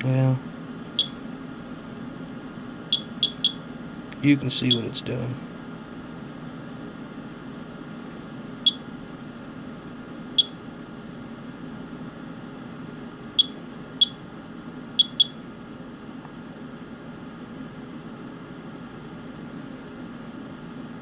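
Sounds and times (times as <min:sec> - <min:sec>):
steady low hum: 0:00.0 - 0:21.0
geiger counter beeps: 0:01.0 - 0:01.2, 0:02.9 - 0:03.6, 0:04.6 - 0:04.9, 0:08.6 - 0:08.8, 0:10.4 - 0:10.6, 0:13.4 - 0:14.2, 0:15.0 - 0:15.4.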